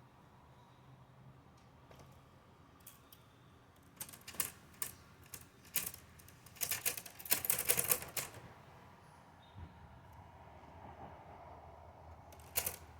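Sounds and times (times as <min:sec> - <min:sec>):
typewriter keys clacking: 0:04.0 - 0:08.4, 0:12.4 - 0:12.8.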